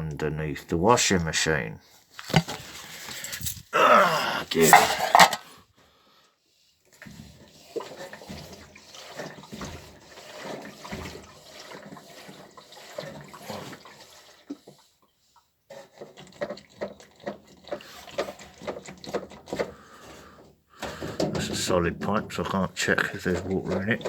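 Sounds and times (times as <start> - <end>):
hose and machine parts knocking: 2.2 - 3.5, 4.6 - 5.5, 20.8 - 24.0
water sloshing and gurgling in hose: 4.6 - 24.0.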